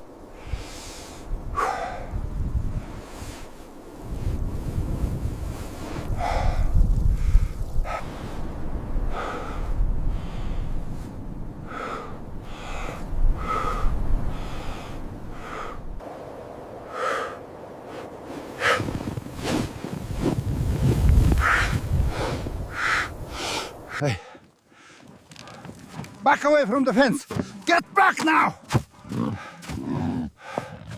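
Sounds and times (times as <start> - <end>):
low wind rumble: 0.0 - 24.9
short sharp breaths: 21.4 - 25.8.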